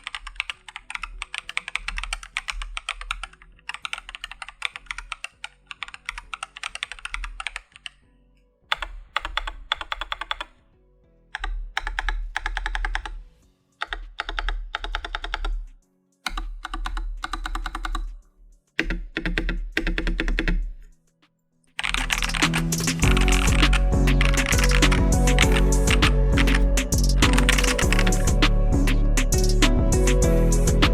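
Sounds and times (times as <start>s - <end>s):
rapid key presses: 0.0s - 7.9s, 8.7s - 10.5s, 11.4s - 13.2s, 13.8s - 15.7s, 16.3s - 18.2s, 18.8s - 20.8s, 21.8s - 28.5s
mechanical keyboard typing: 0.0s - 8.0s, 8.7s - 10.6s, 11.4s - 13.2s, 13.8s - 15.7s, 16.3s - 18.2s, 18.8s - 20.8s, 21.8s - 28.5s
faint background music: 0.0s - 30.9s.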